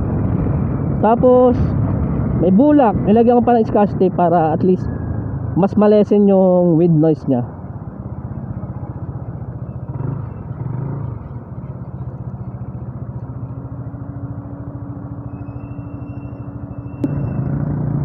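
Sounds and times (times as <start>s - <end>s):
motorcycle engine running: 16.2s - 18.0s.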